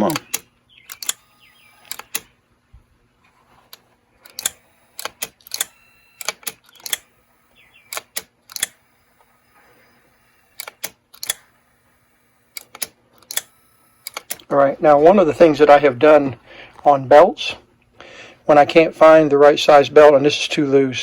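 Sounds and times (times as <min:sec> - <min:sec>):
sharp mechanical clicks: 0:00.0 - 0:02.4, 0:03.7 - 0:14.5
faint steady hum: 0:00.0 - 0:21.0.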